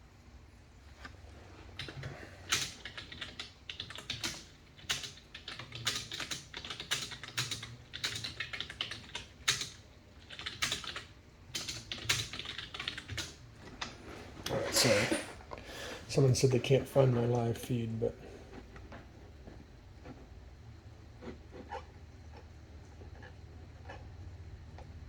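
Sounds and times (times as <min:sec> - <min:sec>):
computer keyboard typing: 0:01.8 - 0:14.0.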